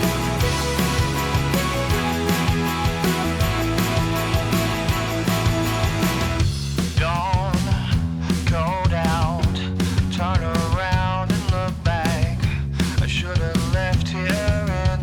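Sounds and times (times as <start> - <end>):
wavering lead melody: 0.0 - 6.4
rock background music: 0.0 - 7.2
steady drum beat: 0.0 - 15.0.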